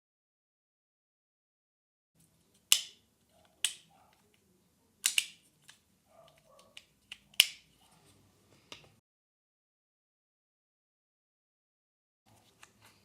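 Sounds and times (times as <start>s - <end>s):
sharp clicks and snaps: 2.5s - 4.4s, 5.0s - 7.7s.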